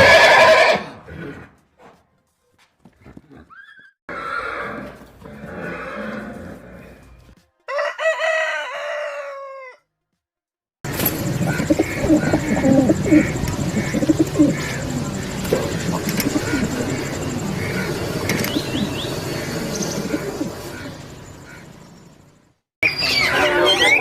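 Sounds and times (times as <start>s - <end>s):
farm animal sounds: 2.8s - 9.8s, 10.9s - 21.7s
rooster crowing: 7.7s - 9.9s.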